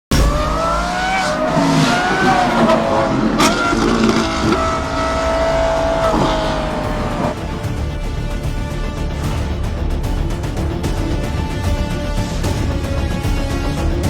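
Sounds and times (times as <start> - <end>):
car engine revving: 0.1 - 8.0.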